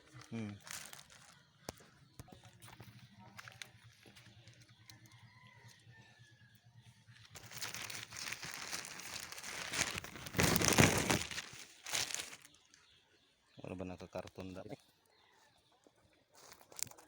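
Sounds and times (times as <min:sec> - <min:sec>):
packaging crinkling: 0:00.6 - 0:01.4, 0:07.3 - 0:12.5.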